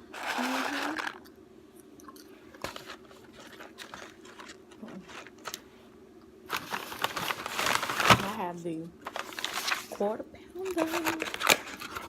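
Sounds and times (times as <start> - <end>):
fries packaging crackling: 2.7 - 5.7, 6.5 - 12.0.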